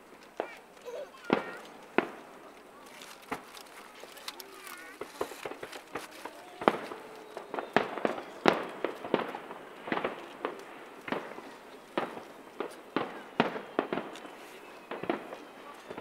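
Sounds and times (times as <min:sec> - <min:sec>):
fireworks shells bursting: 0:00.0 - 0:16.0.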